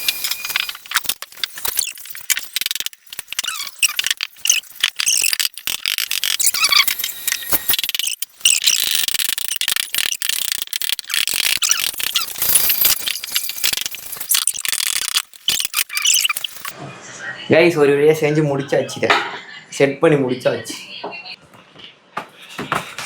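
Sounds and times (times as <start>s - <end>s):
squeaking and clicking of assembly: 0.0s - 16.7s.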